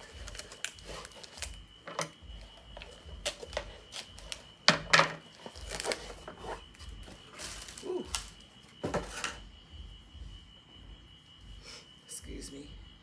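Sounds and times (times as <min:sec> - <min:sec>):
packaging clicks and crackles: 0:00.0 - 0:09.2
faint thumping music: 0:00.0 - 0:13.0.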